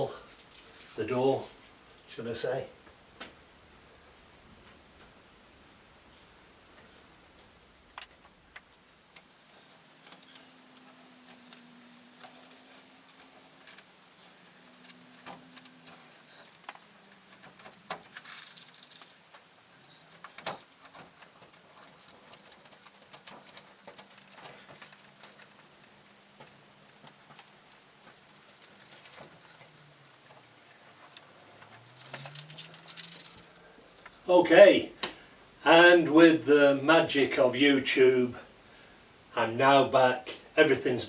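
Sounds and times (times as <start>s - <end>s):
faint low hum: 0.0s - 41.0s
tape tearing hiss: 6.1s - 34.0s
masking tape peeling crackles: 7.3s - 34.2s.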